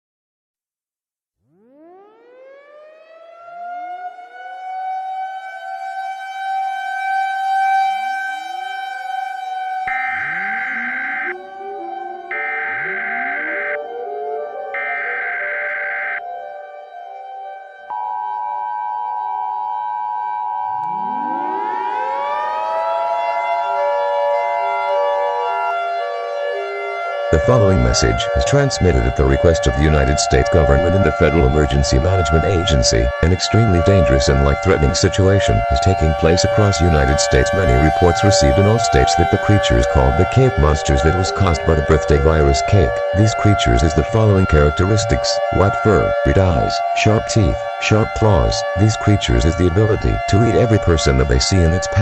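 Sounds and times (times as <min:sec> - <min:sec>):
warning siren winding up: 0:01.5 - 0:52.0
two-tone electronic alert tone: 0:09.5 - 0:22.6.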